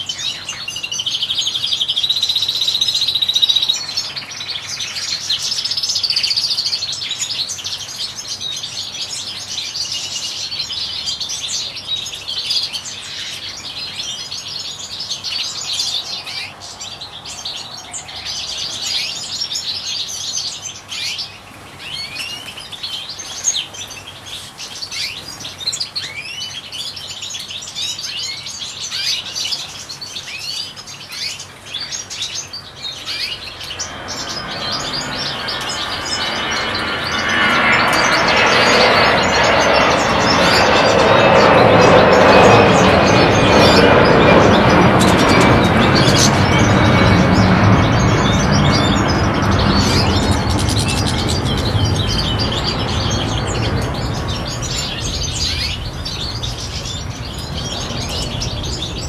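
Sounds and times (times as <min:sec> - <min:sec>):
finches twittering: 0:00.0 - 0:59.0
bird steady whistle: 0:01.6 - 0:04.0.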